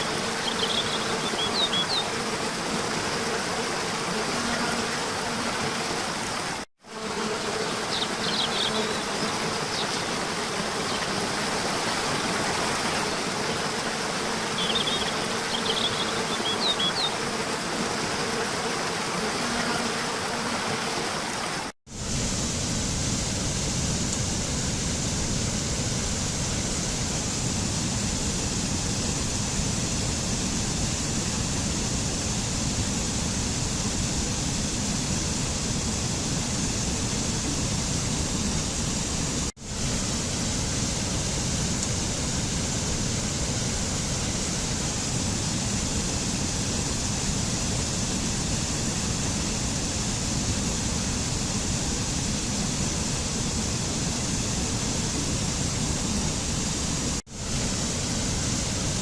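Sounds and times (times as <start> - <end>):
birds chirping: 0.0 - 2.2, 7.4 - 11.7, 14.4 - 17.3
waterfall rushing: 7.7 - 21.7.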